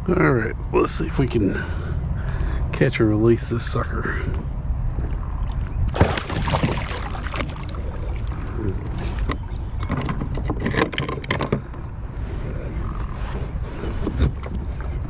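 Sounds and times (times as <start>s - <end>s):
fish splashing in water: 5.9s - 9.3s.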